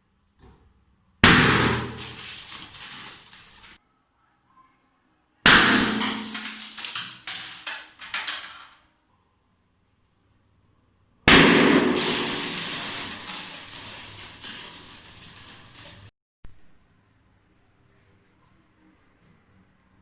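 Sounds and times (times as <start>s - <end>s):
rattling and crackling: 1.5s - 3.8s, 5.8s - 8.8s, 11.8s - 16.1s.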